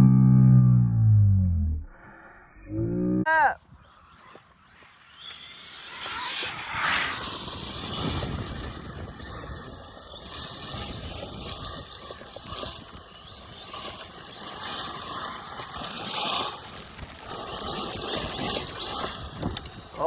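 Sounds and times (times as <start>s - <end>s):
rc truck electric drive whirring: 3.6s - 20.0s.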